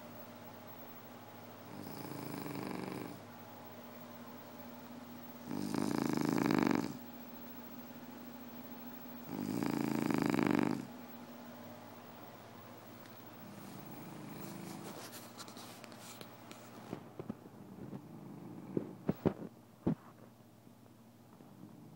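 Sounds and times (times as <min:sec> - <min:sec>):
person snoring: 0:01.7 - 0:03.2, 0:05.4 - 0:07.0, 0:09.3 - 0:10.9.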